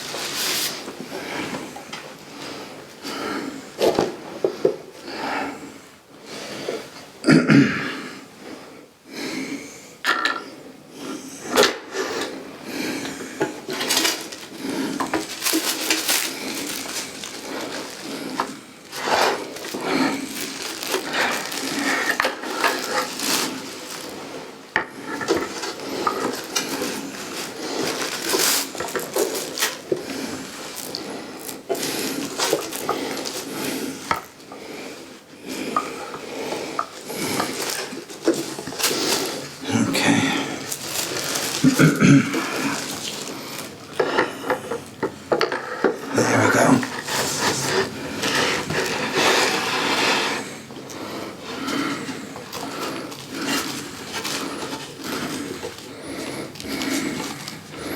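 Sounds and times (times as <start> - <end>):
parts scraping: 40.5 - 50.5.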